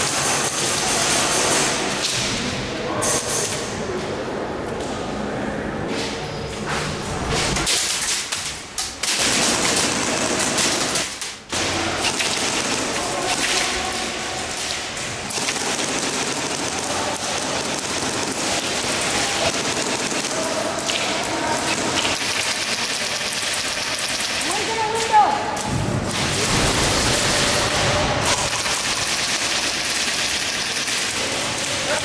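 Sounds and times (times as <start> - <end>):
airsoft guns firing: 9.0 - 32.0.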